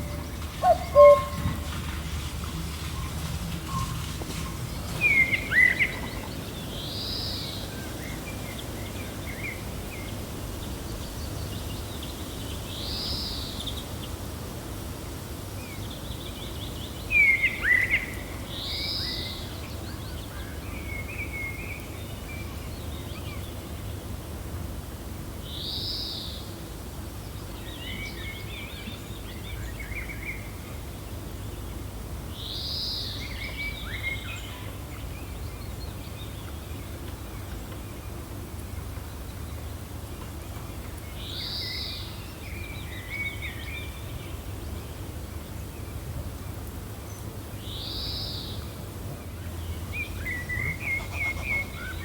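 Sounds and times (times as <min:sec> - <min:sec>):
birds chirping: 0:00.0 - 0:07.2
low wind rumble: 0:00.0 - 0:17.1.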